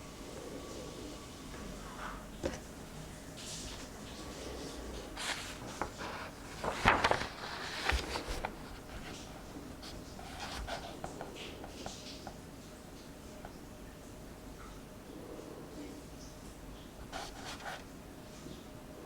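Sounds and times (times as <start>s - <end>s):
paper rustling: 2.0s - 2.7s, 3.4s - 12.4s, 17.0s - 17.9s
book pages turning: 2.4s - 2.7s, 3.4s - 12.4s, 17.2s - 17.9s.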